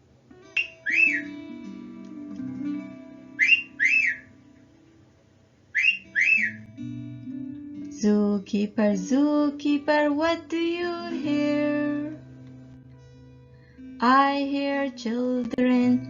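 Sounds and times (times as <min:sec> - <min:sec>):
person whistling two-note phrase: 0:00.6 - 0:01.3, 0:03.4 - 0:04.2.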